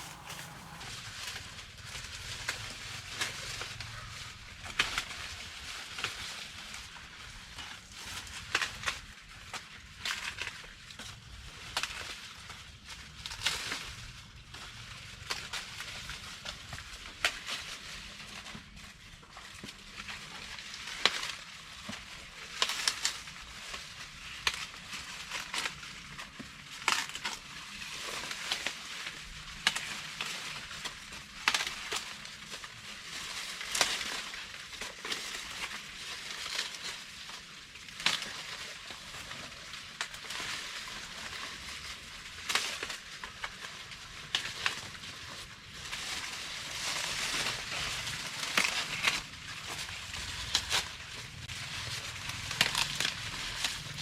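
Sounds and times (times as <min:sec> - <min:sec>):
corn ears snapping: 0:00.0 - 0:00.9, 0:45.8 - 0:54.0
dry corn plants rustling: 0:00.0 - 0:54.0.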